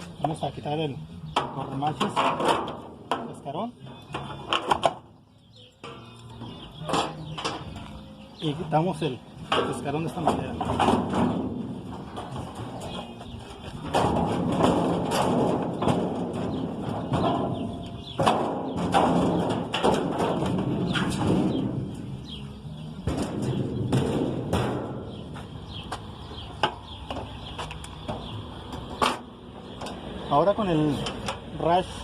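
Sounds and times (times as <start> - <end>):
sheet metal knocking and clattering: 1.3 - 5.0, 9.4 - 22.2, 23.0 - 27.4.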